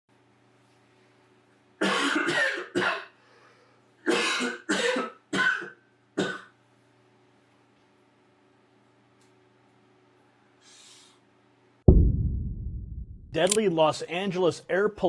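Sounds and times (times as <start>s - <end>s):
person coughing: 1.8s - 3.1s, 4.1s - 6.5s.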